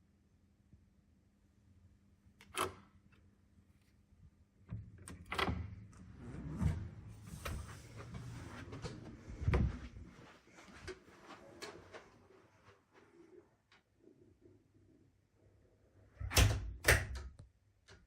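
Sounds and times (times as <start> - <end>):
elevator doors sliding: 5.3 - 10.0.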